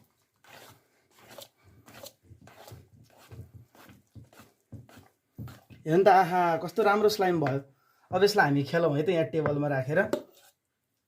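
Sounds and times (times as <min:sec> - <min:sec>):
slime being stirred by hand: 0:00.0 - 0:06.0.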